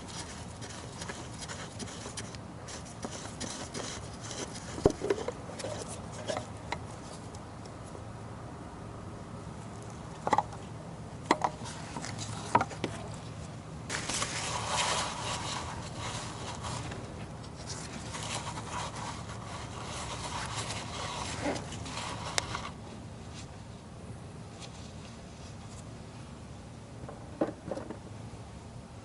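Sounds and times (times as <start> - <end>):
rustling and scraping of tools: 0.0 - 7.4, 11.3 - 23.6.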